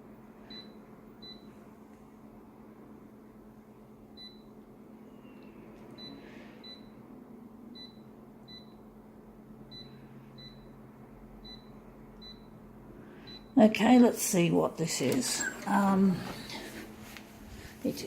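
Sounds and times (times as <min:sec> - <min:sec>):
low steady hum: 0:00.0 - 0:18.0.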